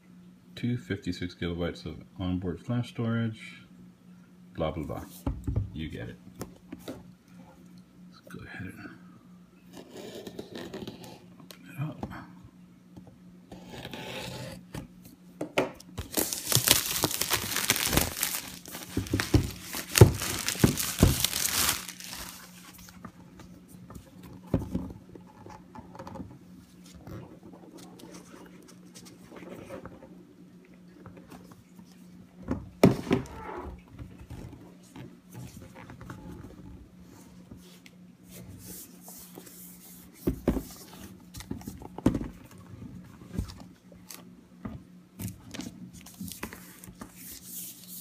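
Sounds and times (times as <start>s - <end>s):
plastic wrapping crinkling: 16.0s - 23.0s
handling noises: 16.0s - 24.8s.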